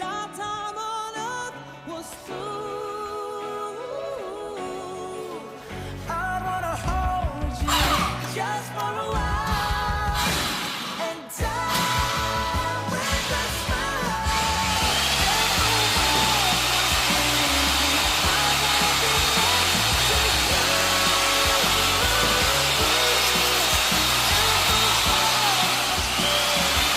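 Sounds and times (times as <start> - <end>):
background music: 0.0 - 26.9
electric motor whirring: 10.2 - 26.9.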